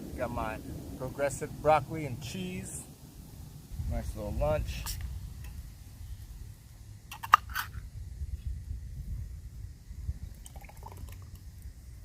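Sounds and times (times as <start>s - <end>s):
thick soup pouring into pot: 10.4s - 11.4s.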